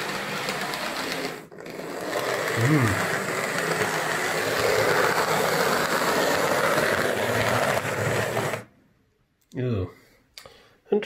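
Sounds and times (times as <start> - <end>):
model train motor whirring: 0.0 - 8.7.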